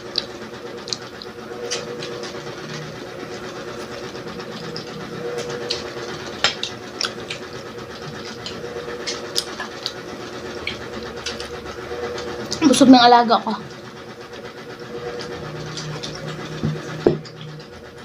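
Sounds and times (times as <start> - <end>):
chewing with mouth clicks: 0.0 - 2.8, 3.7 - 11.6, 14.8 - 18.0.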